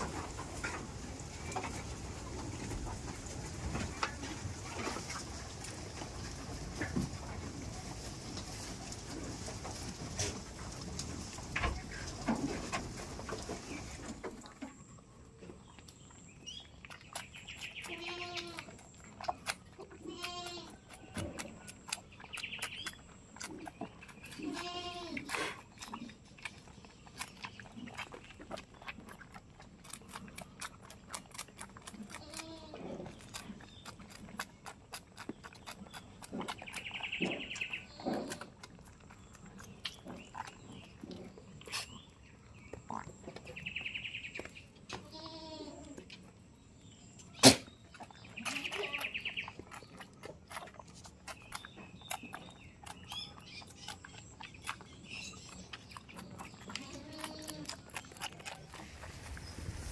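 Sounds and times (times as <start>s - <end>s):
goats bleating: 20.0s - 20.8s, 24.4s - 25.3s, 45.0s - 45.9s, 56.7s - 57.8s.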